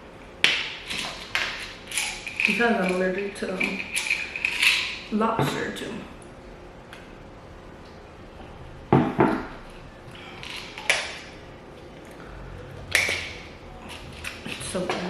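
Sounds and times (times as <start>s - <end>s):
utensil clinking against a dish: 0.9s - 5.1s.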